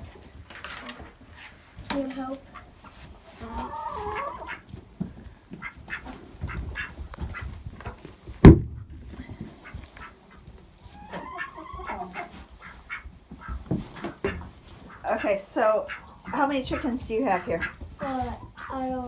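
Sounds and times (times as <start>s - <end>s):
chickens clucking: 2.4s - 19.0s
duck quacking: 5.6s - 7.5s, 11.2s - 13.6s, 14.2s - 17.8s
loud sharp knock: 8.4s - 8.8s.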